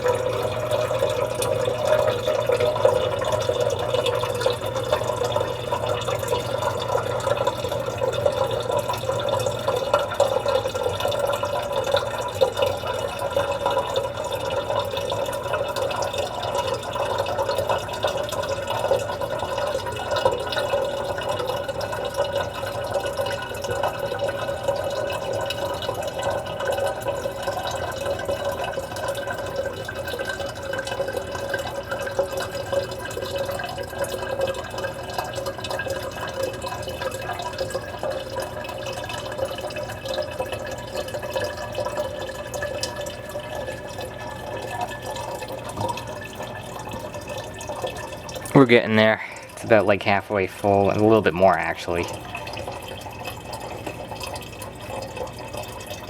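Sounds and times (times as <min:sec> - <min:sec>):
water running into plastic tank: 0:00.0 - 0:56.0.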